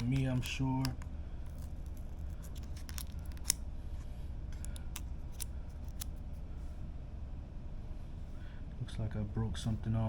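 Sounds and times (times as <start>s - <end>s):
plastic and metal parts clicking: 0.0s - 3.6s
low steady hum: 0.0s - 10.0s.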